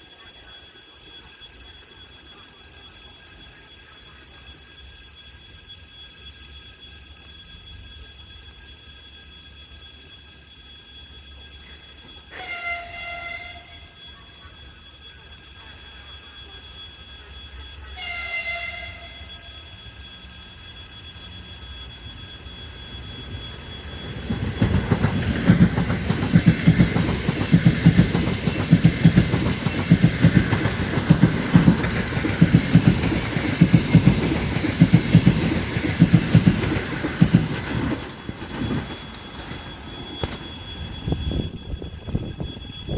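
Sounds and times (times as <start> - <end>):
train wheels clattering over rail joints: 22.5 - 40.7.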